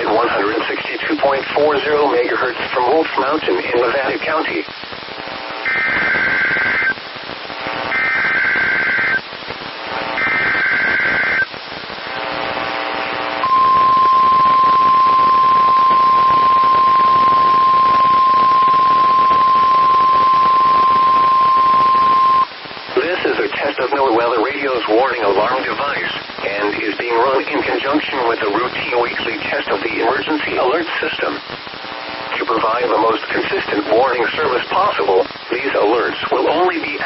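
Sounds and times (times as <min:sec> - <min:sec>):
radio hiss: 0:00.0 - 0:37.0
data signal bursts: 0:05.5 - 0:07.0, 0:07.6 - 0:09.3, 0:10.2 - 0:11.6, 0:13.4 - 0:23.9
steady warning alarm tone: 0:05.6 - 0:07.0, 0:07.9 - 0:09.2, 0:10.2 - 0:11.4, 0:13.4 - 0:22.5.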